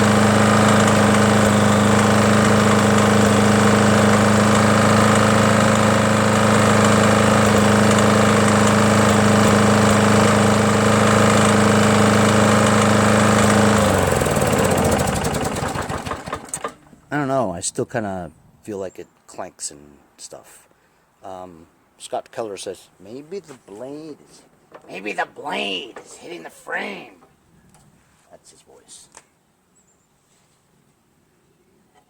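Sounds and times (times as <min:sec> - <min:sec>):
lawn mower engine running: 0:00.0 - 0:17.1, 0:23.9 - 0:27.3.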